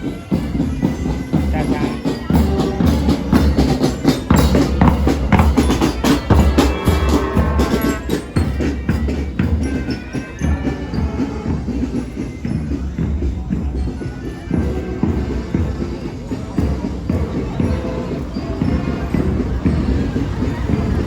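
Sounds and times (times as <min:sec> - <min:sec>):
drums and percussion beat: 0:00.0 - 0:21.0
heavy bass: 0:04.4 - 0:08.6.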